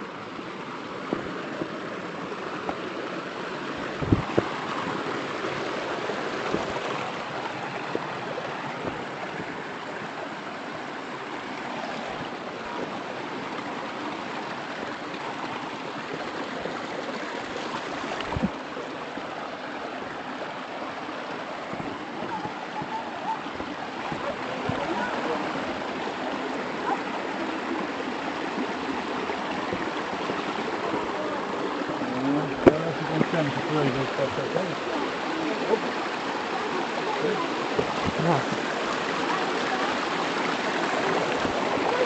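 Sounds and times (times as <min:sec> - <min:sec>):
flowing water rushing: 0:00.0 - 0:42.0
short low thumps: 0:04.0 - 0:04.5.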